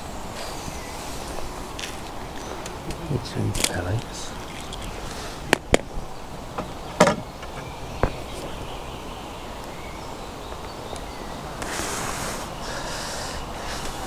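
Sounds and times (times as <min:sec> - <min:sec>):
outdoor background hiss: 0:00.0 - 0:14.0
fishing tackle clicks and knocks: 0:01.8 - 0:05.9.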